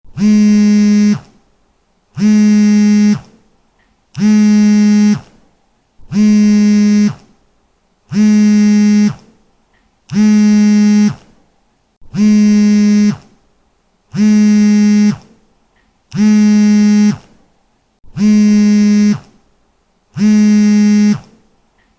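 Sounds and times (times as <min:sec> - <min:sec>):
mobile phone vibrating: 0:00.1 - 0:01.4, 0:02.2 - 0:03.4, 0:04.2 - 0:05.4, 0:06.1 - 0:07.3, 0:08.1 - 0:09.3, 0:10.1 - 0:11.2, 0:12.1 - 0:13.4, 0:14.1 - 0:15.4, 0:16.1 - 0:17.3, 0:18.1 - 0:19.4, 0:20.2 - 0:21.4.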